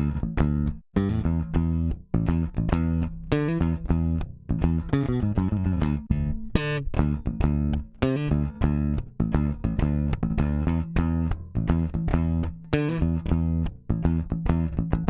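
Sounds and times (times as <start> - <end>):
electric bass plucked notes: 0.0 - 15.0.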